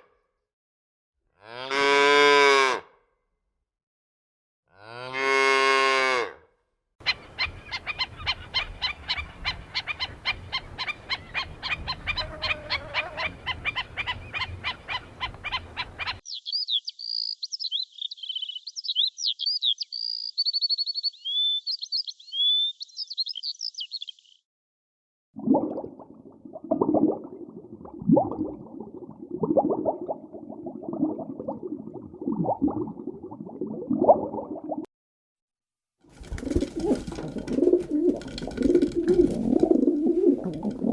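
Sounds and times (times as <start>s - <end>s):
croak-like animal calls: 7.0s - 16.2s
cow mooing: 12.2s - 13.3s
bird chirps and whistles: 16.2s - 24.4s.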